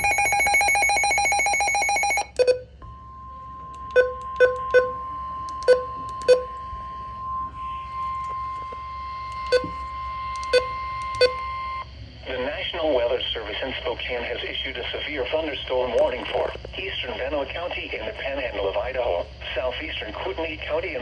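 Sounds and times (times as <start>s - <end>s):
rapidly pulsing electronic beeping: 0.0s - 11.9s
steady warning alarm tone: 0.0s - 12.3s.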